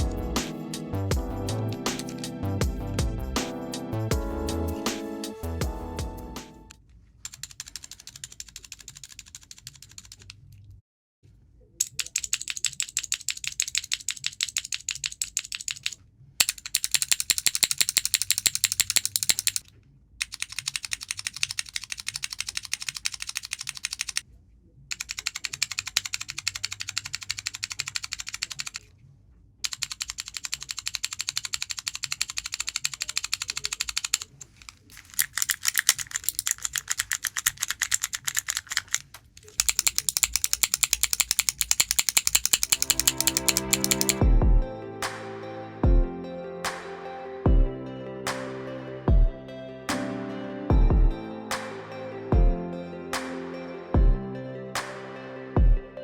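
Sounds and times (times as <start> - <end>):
mechanical keyboard switches clicking: 35.2 - 44.2.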